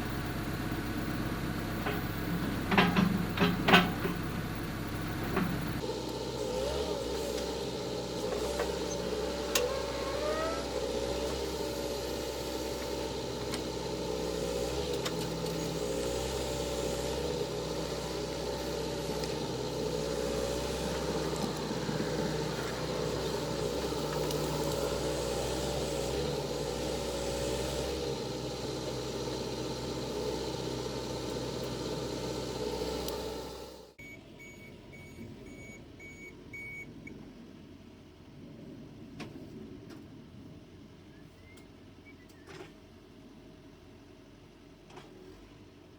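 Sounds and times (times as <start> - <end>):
diesel engine running: 0.0 - 38.4.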